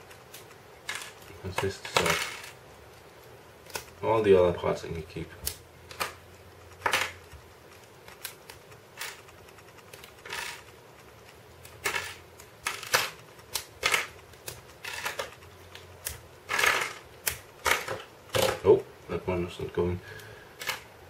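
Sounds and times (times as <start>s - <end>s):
plastic pieces clicking and clattering: 11.8s - 15.4s.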